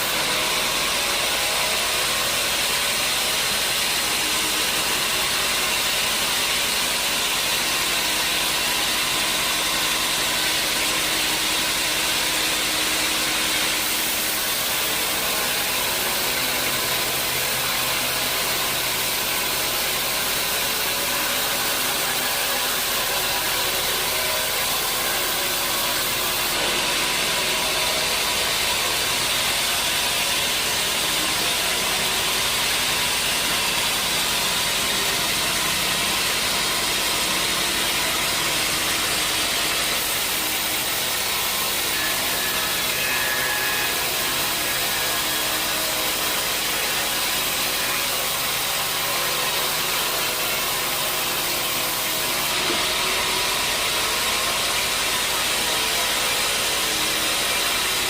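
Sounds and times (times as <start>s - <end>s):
sawmill machinery running: 0.0s - 58.0s.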